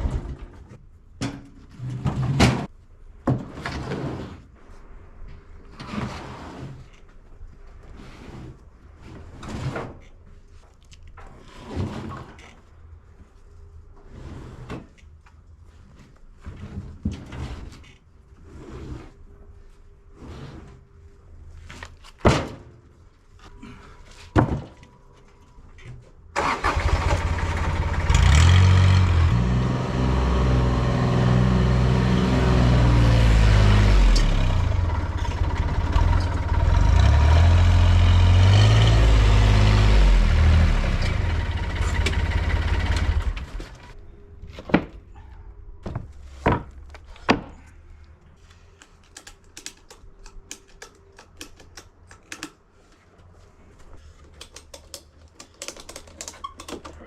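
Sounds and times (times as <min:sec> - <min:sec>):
engine running with low drone: 0:27.0 - 0:44.0.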